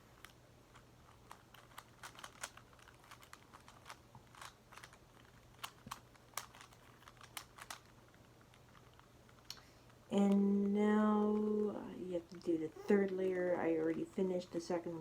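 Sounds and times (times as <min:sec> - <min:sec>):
puzzle cube faces clicking: 0:00.1 - 0:10.4.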